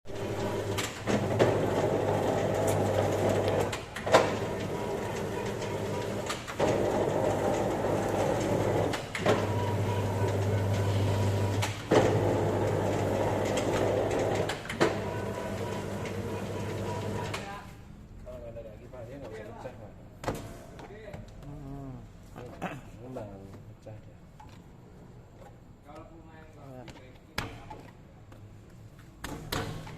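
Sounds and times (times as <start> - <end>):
dough sheeter motor humming: 0.1 - 17.4.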